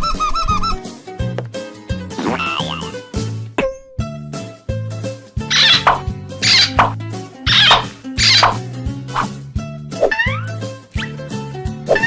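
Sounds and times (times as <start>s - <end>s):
bouncy cartoon music: 0.0s - 12.0s
warbling cartoon sound effect: 10.0s - 11.1s.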